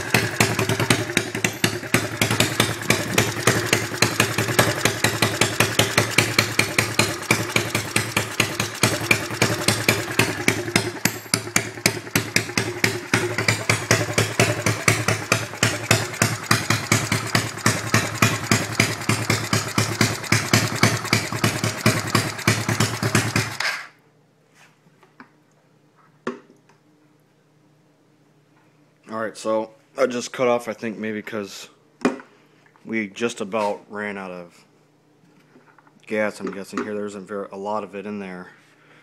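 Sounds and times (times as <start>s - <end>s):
pocket bike engine running: 0.0s - 23.6s.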